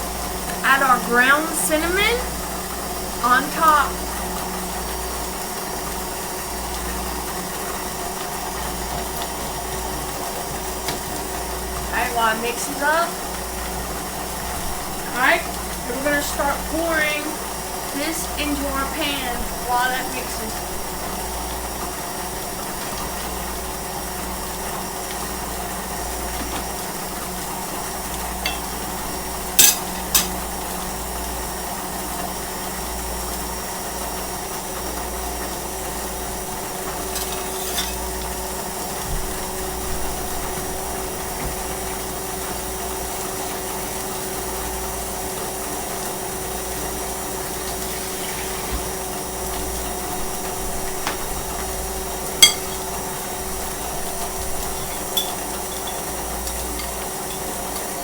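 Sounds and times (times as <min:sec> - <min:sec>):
electric mixer motor running: 0:00.0 - 0:58.0
dishes clinking: 0:28.4 - 0:28.8, 0:29.6 - 0:30.4, 0:37.1 - 0:38.1, 0:52.4 - 0:53.0, 0:54.7 - 0:57.6.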